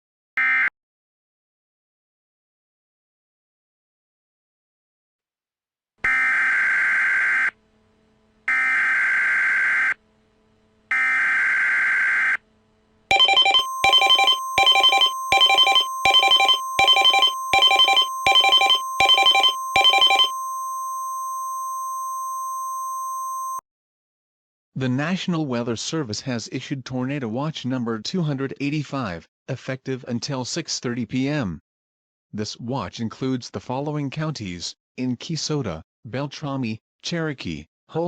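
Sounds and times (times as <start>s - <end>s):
screeching digital header bursts: 13.1s - 20.4s
steady alert tone: 13.1s - 21.0s
pulsing beep: 13.1s - 23.6s.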